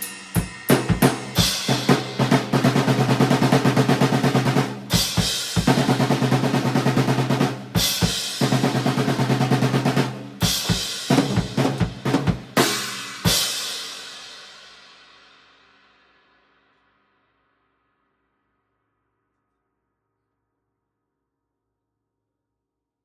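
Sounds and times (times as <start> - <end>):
cymbal crashes: 0.0 - 3.6, 12.6 - 15.8
snare drum rolls: 0.4 - 13.9.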